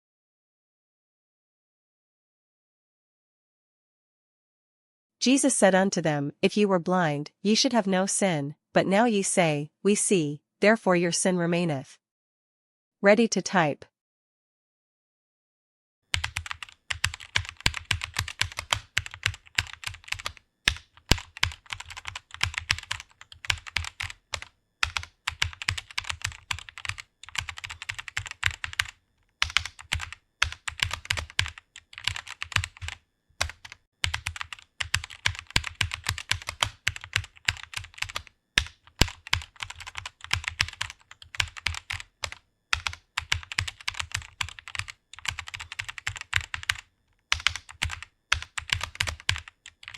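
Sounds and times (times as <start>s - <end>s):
keyboard typing: 16.1s - 49.9s.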